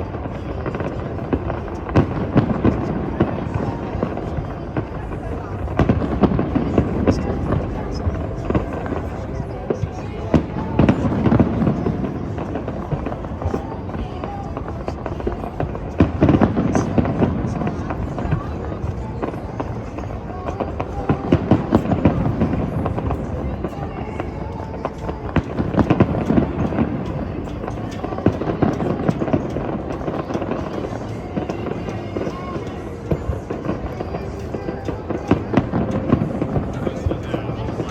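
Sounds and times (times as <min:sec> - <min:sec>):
continuous rumble: 0:00.0 - 0:37.9
crowd voices: 0:00.0 - 0:37.9
fireworks bangs and crackles: 0:00.0 - 0:37.9.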